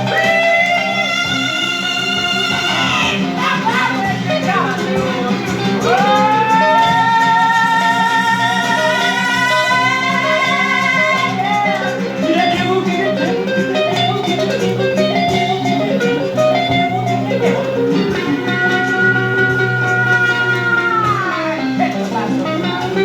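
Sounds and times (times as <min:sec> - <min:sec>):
guitar-led band music: 0:00.0 - 0:23.0.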